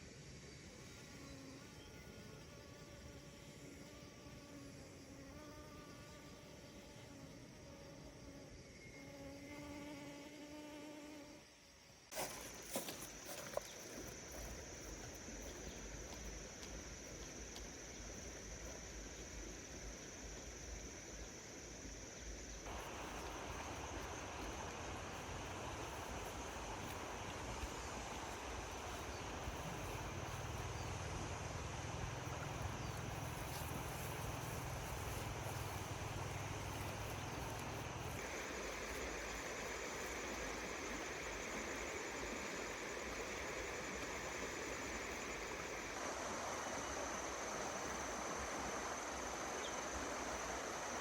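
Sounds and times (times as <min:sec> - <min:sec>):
steady hiss: 0:00.0 - 0:51.0
insect buzzing: 0:00.5 - 0:51.0
high-pitched insect drone: 0:12.2 - 0:46.0.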